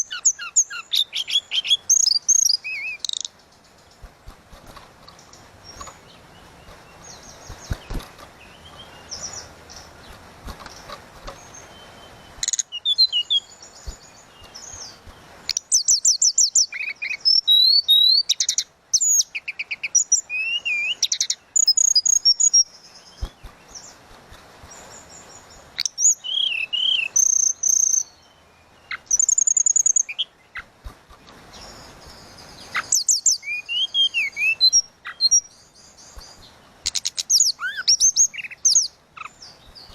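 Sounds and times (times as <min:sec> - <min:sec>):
songbird whistling and trilling: 0:00.0 - 0:03.3, 0:11.8 - 0:14.0, 0:15.5 - 0:23.3, 0:25.8 - 0:28.2, 0:28.9 - 0:30.4, 0:31.6 - 0:39.9.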